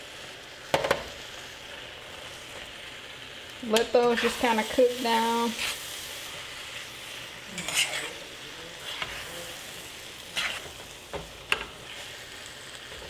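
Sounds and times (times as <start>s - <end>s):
food sizzling in a hot pan: 0.0s - 13.0s
utensil scraping and knocking pan: 7.5s - 8.2s, 8.8s - 9.3s, 10.3s - 12.1s.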